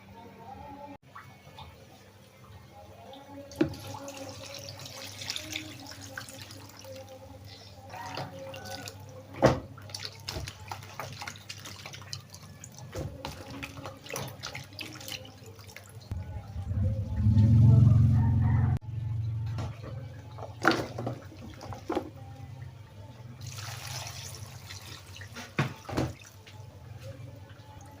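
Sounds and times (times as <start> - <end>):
water running at a sink: 3.5 - 16.1, 23.4 - 26.7.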